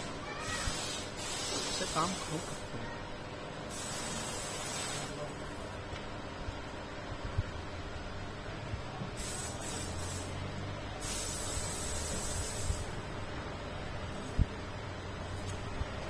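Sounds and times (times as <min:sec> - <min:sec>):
steady low hum: 0:00.0 - 0:16.0
spray paint hissing: 0:00.4 - 0:02.7, 0:03.7 - 0:05.4, 0:09.2 - 0:10.4, 0:11.0 - 0:13.0.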